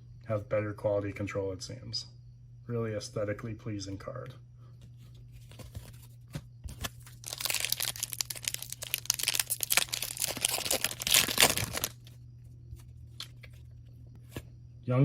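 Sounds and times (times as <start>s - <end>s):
foil wrapper crinkling and tearing: 6.7s - 12.2s.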